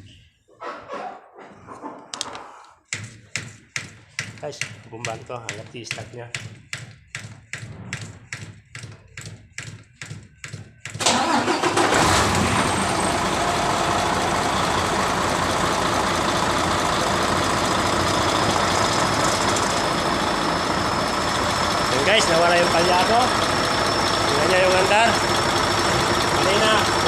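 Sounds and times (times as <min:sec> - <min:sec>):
hand-priming pump strokes: 0:02.5 - 0:11.9
diesel engine running: 0:11.0 - 0:27.0.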